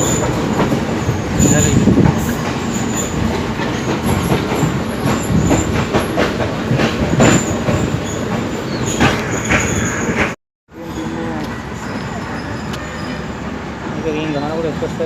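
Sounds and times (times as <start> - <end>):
train wheels clattering over rail joints: 0.0 - 10.4
high wheel squeals: 7.2 - 14.6.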